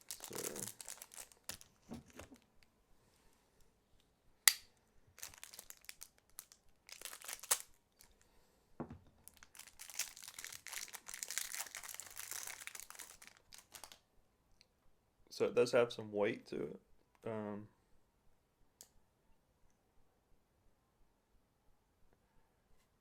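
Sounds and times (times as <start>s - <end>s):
packaging crinkling and rustling: 0.0s - 2.6s, 5.2s - 8.2s, 9.2s - 14.0s.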